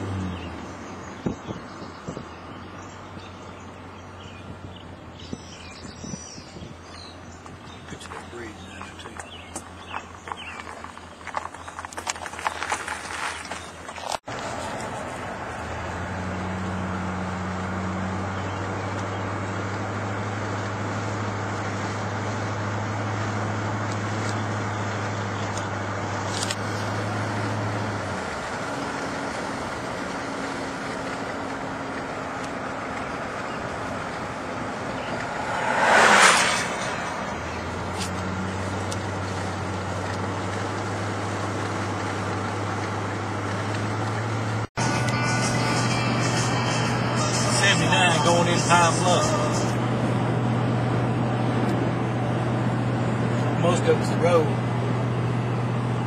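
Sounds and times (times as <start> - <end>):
low engine drone: 14.1 - 56.0
passing vehicle whoosh: 33.8 - 44.7.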